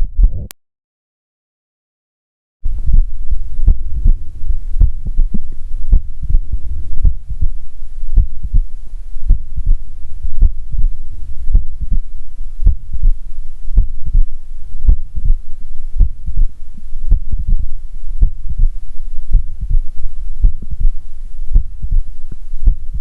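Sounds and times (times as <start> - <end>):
heart murmur: 2.7 - 8.7, 9.3 - 9.8, 10.4 - 15.4, 16.0 - 16.5, 17.1 - 23.0
heartbeat thuds: 2.7 - 8.7, 9.3 - 13.2, 13.8 - 15.4, 16.0 - 16.5, 17.1 - 23.0
steady low hum: 2.7 - 23.0.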